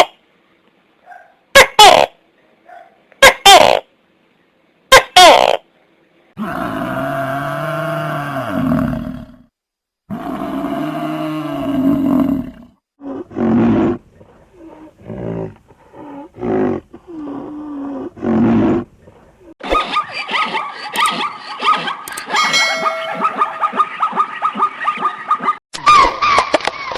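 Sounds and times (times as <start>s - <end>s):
large animal bellowing: 6.4s - 9.4s.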